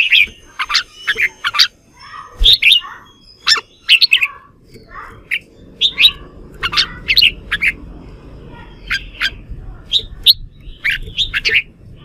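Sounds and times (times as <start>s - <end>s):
bulbul singing: 0.0s - 12.0s.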